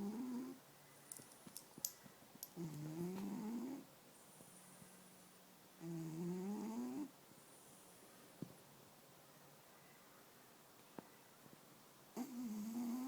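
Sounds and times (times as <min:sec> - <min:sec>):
cat snoring: 0:00.0 - 0:00.6, 0:02.6 - 0:03.8, 0:05.8 - 0:07.1, 0:12.2 - 0:13.0.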